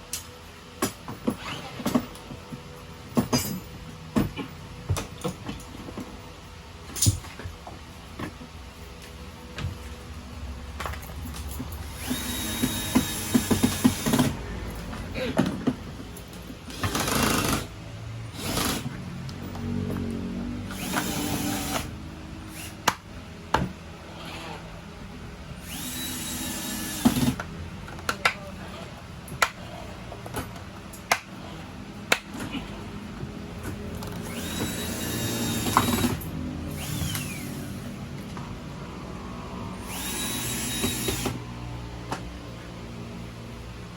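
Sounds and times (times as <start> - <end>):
small electric motor whining: 11.9 - 14.4, 25.6 - 27.4, 34.0 - 37.9, 39.8 - 41.5.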